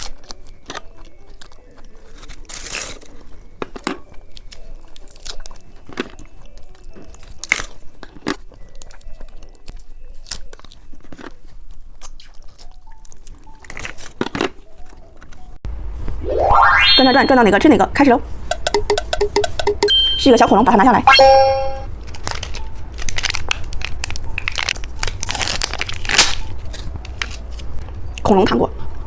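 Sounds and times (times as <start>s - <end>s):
chewing and crunching candy: 0.0s - 15.6s, 21.8s - 28.8s.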